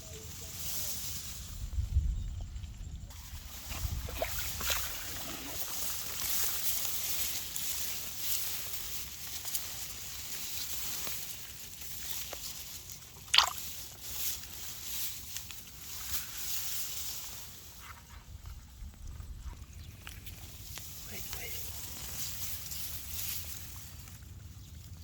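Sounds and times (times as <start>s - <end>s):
water sloshing and dripping: 3.5s - 6.2s, 13.3s - 13.8s
small splashes: 3.5s - 6.3s, 13.2s - 13.8s.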